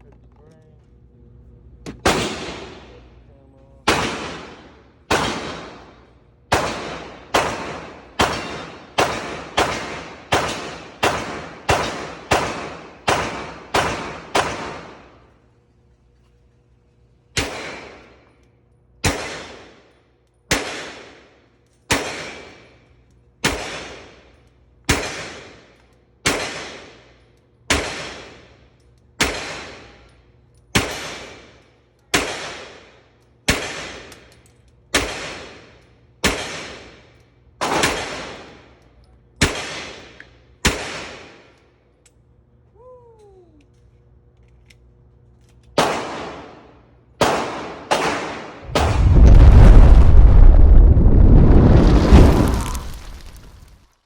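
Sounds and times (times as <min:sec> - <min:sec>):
pistol shots echoing: 0:03.9 - 0:15.0, 0:45.8 - 0:48.6.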